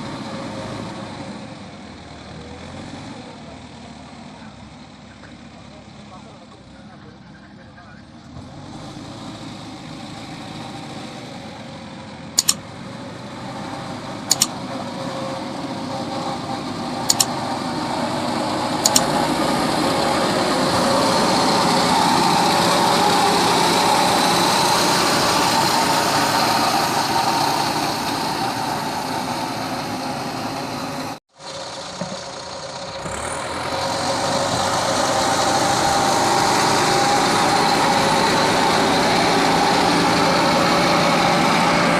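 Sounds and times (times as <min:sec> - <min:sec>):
diesel engine running: 0:00.0 - 0:41.9
sharp metal clanks: 0:12.4 - 0:12.6, 0:14.3 - 0:14.6, 0:17.1 - 0:17.4.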